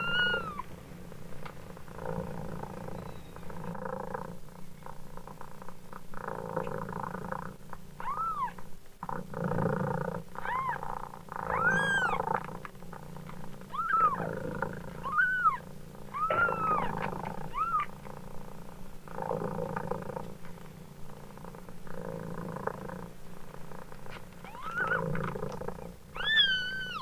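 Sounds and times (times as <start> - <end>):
kitten meowing: 0.0 - 0.6, 8.0 - 8.6, 10.4 - 10.9, 11.5 - 12.2, 13.7 - 14.3, 15.0 - 17.9, 24.4 - 25.0, 26.2 - 27.0
cat purring: 0.0 - 27.0.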